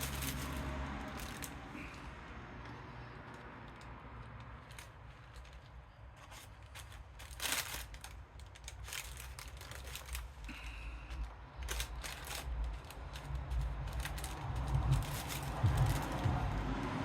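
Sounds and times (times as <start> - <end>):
low rumble: 11.6 - 17.0.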